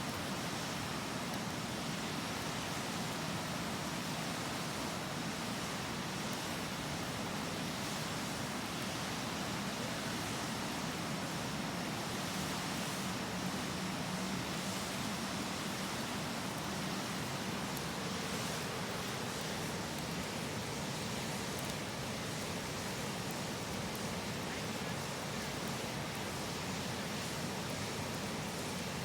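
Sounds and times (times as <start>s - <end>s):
river rushing: 0.0s - 29.0s.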